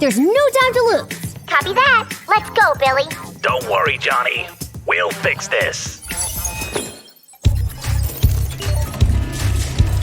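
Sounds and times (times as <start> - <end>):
music with fast bass beat: 7.5 - 10.0.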